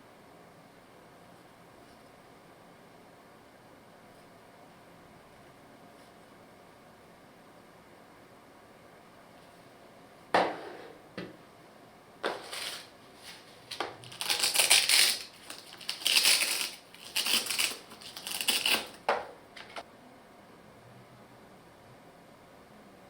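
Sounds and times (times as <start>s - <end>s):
packaging crinkling and rustling: 12.3s - 19.1s.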